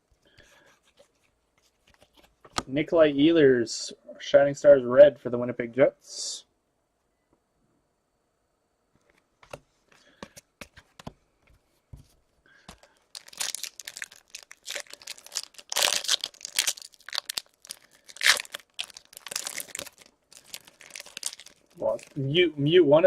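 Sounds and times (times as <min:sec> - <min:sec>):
foil wrapper tearing and crinkling: 0:12.7 - 0:22.3.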